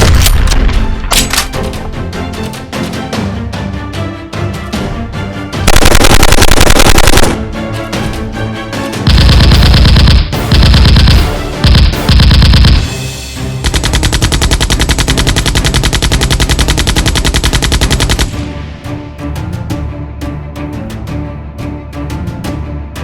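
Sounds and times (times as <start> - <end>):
background music: 0.0 - 23.0
automatic gunfire bursts: 5.7 - 7.4, 9.1 - 12.9, 13.6 - 18.4.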